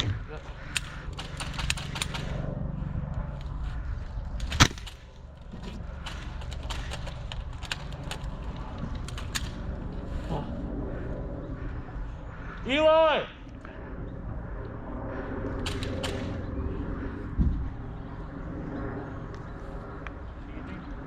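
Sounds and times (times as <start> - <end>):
airsoft gun shots: 4.5 - 5.1.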